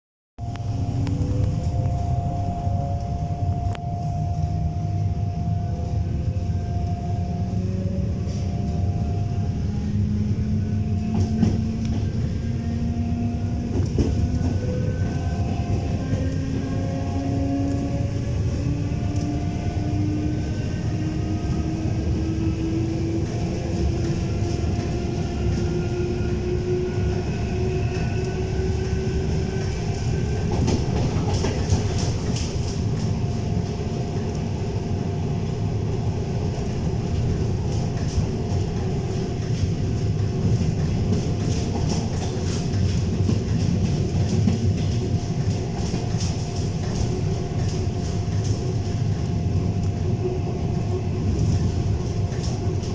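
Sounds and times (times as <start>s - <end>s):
train motor whine rising: 0.4s - 31.6s
train low rumble: 0.4s - 52.9s.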